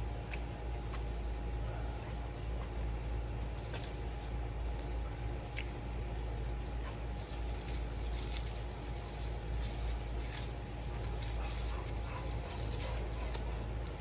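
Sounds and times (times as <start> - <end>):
steady low rumble: 0.0 - 14.0
rustles: 3.4 - 14.0.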